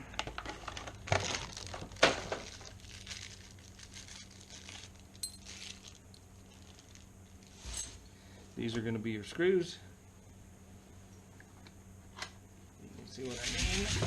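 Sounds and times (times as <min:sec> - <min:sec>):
rustling: 0:00.6 - 0:08.0.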